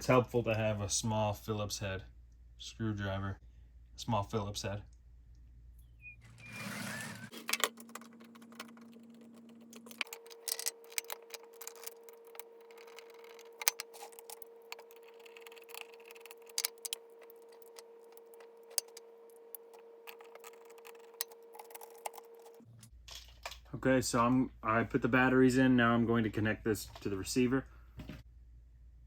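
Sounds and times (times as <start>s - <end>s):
batteries clicking in plastic box: 7.3s - 19.0s.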